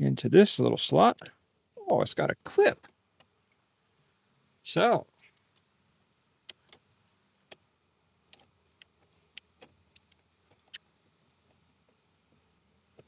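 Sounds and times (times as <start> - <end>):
small plastic clicks: 6.5 - 6.8.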